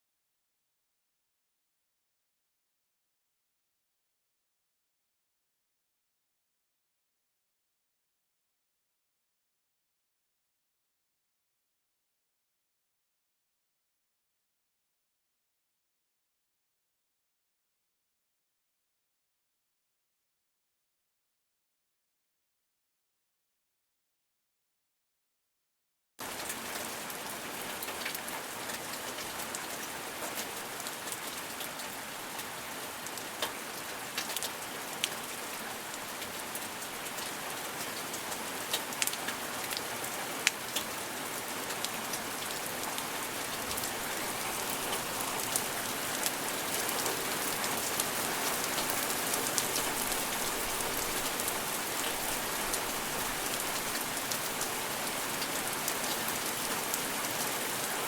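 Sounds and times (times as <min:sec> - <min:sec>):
steady rain falling: 0:26.2 - 0:58.0.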